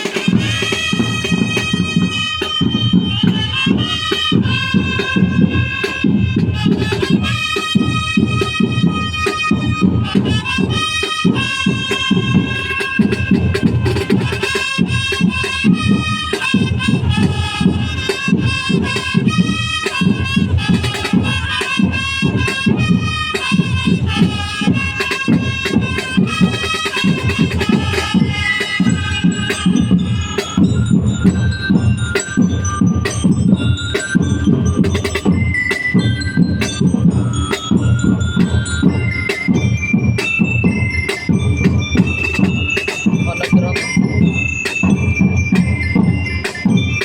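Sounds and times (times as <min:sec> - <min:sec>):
melody over dense beat: 0:24.9 - 0:46.6.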